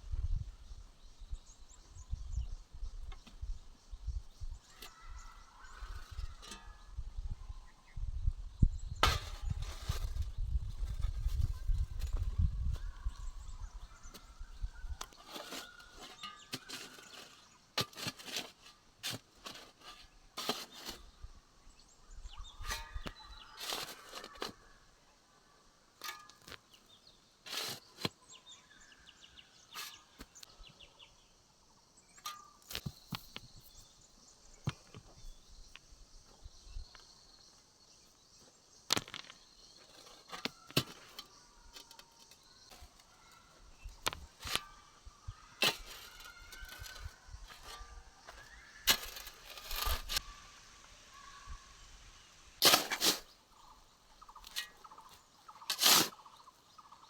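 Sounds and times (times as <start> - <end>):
quiet outdoor background: 0.0 - 57.0.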